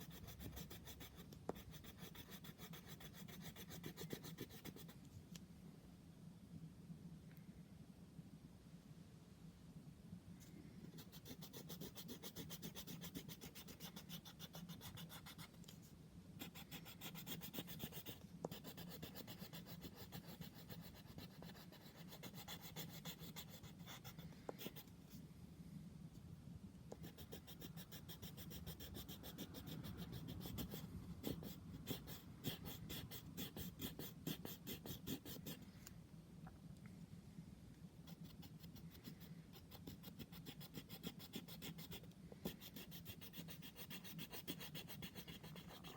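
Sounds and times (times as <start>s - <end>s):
pencil scribbling on paper: 0.0s - 5.0s, 10.9s - 15.6s, 16.4s - 24.8s, 26.9s - 35.6s, 38.0s - 45.9s
faint low hum: 0.0s - 45.9s.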